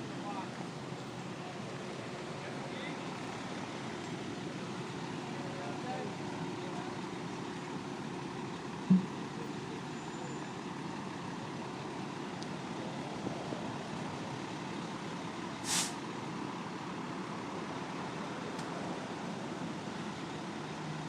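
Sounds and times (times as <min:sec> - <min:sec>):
short hiss of air: 0:15.6 - 0:16.0.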